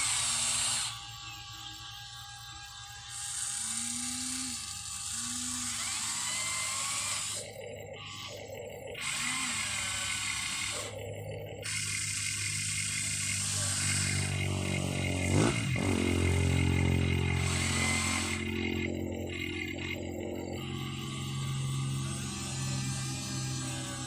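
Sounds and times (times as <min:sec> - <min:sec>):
electric motors whining: 0:00.0 - 0:24.0
steady low hum: 0:10.9 - 0:24.0.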